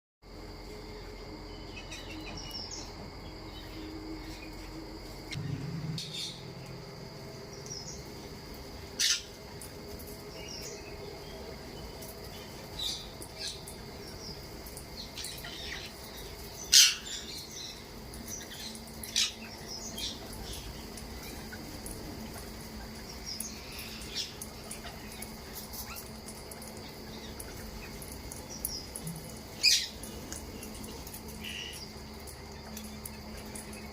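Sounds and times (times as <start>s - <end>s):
steady high-pitched tone: 1.1s - 7.7s.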